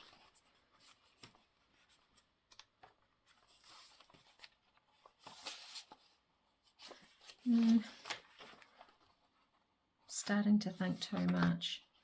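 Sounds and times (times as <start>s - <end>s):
paper rustling on a desk: 0.0s - 12.0s.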